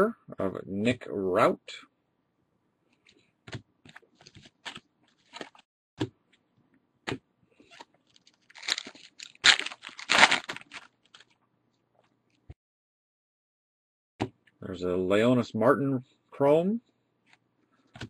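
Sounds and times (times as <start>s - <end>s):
foil wrapper being torn open: 8.0s - 11.3s.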